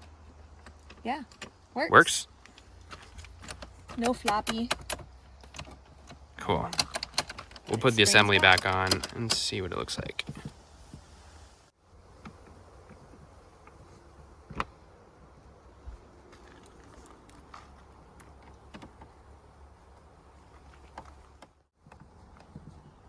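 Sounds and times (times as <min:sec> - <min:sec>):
low steady hum: 0:00.0 - 0:21.4
metal parts clicking and tapping: 0:02.4 - 0:09.5.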